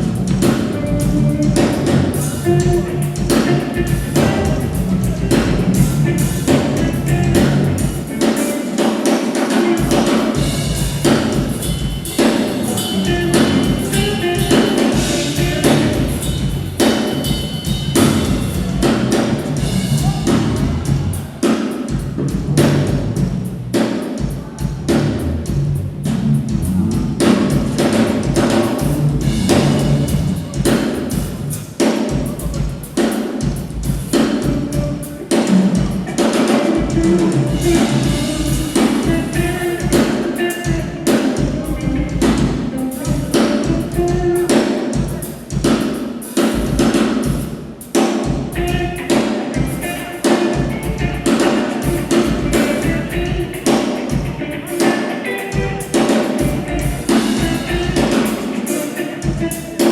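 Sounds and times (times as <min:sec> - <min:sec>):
drum kit groove: 0:00.0 - 0:59.9
sustained pitched instruments: 0:09.5 - 0:21.2.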